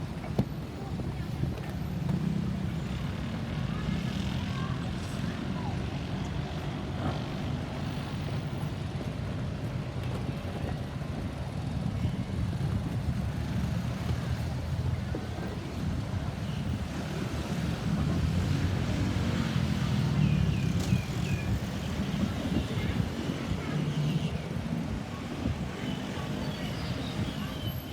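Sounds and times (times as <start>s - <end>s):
road traffic rumble: 0.0s - 27.9s
wind buffeting microphone: 9.8s - 27.6s.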